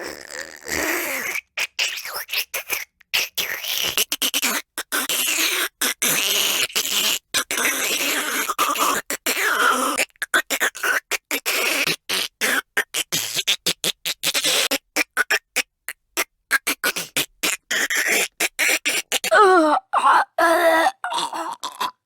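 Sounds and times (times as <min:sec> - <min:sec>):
person choking and gagging: 0:00.0 - 0:01.3, 0:06.8 - 0:22.0.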